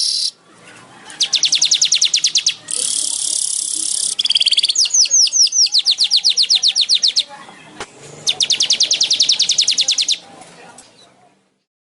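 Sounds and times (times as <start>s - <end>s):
bird calling rapid high notes: 0.0s - 0.4s, 1.1s - 7.3s, 8.2s - 10.2s.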